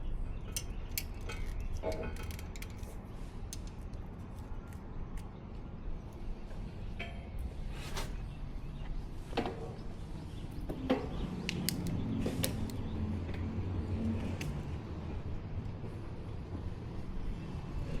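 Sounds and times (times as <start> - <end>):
bicycle creaking and clicking: 0.5 - 5.3.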